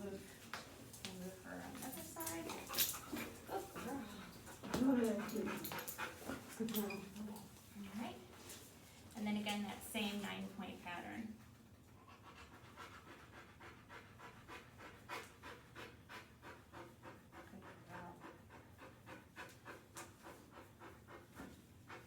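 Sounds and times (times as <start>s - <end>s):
dog panting: 1.4s - 8.6s, 11.6s - 22.0s.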